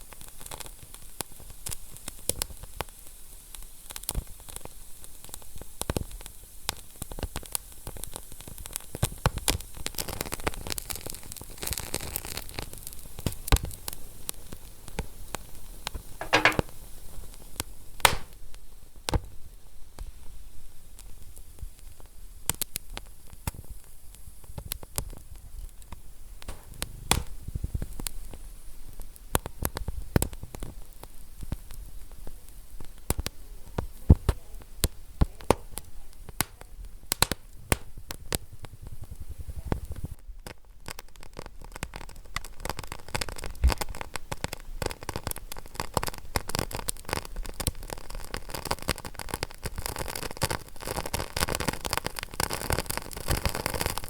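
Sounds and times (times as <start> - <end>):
wood fire crackling: 16.2 - 16.8, 18.0 - 18.5, 24.4 - 54.0.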